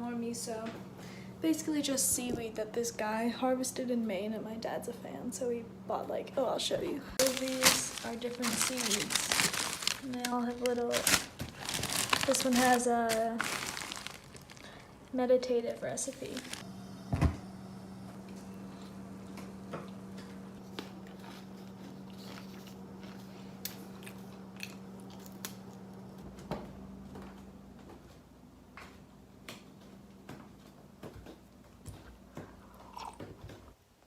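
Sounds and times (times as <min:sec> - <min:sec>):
low hum: 0:07.0 - 0:27.6.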